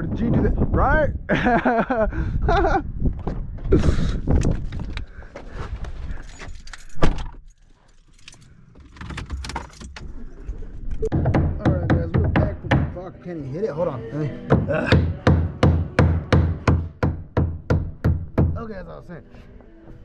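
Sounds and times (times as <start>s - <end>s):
keys jangling: 6.1s - 10.1s.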